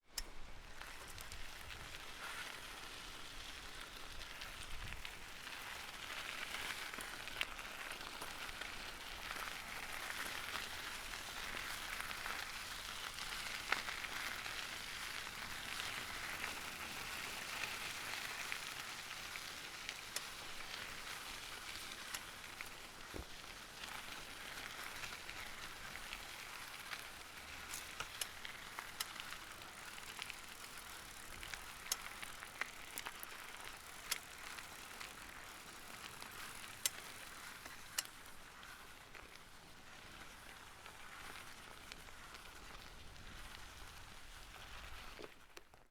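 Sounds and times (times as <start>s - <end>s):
bicycle tyres on gravel: 0.1s - 45.9s
stones ticking: 26.9s - 39.3s.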